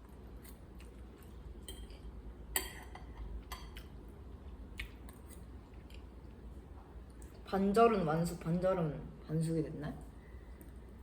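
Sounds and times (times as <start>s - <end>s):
low room hum: 0.0s - 11.0s
cutlery clinking on dishes: 1.7s - 3.8s.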